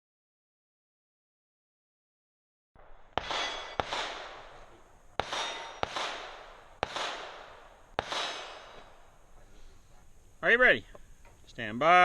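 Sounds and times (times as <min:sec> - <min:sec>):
rifle shots: 0:02.8 - 0:09.5
steel plate clanging: 0:03.2 - 0:06.2, 0:08.0 - 0:09.1.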